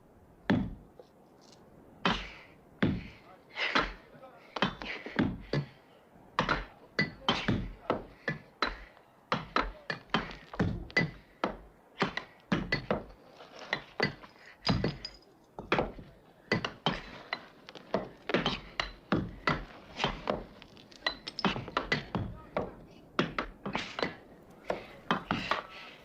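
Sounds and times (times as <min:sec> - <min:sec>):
knocks and thuds with ringing: 0:14.0 - 0:17.1.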